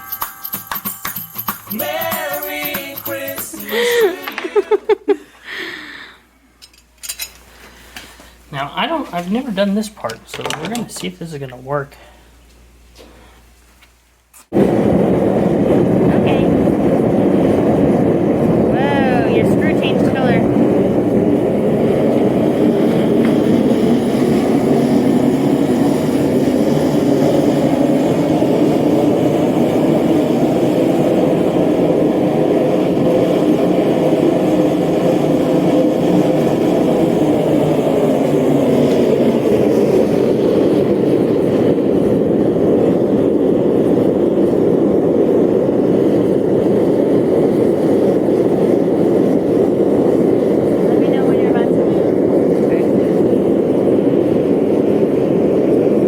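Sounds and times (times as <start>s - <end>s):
forge roaring: 14.5s - 56.0s.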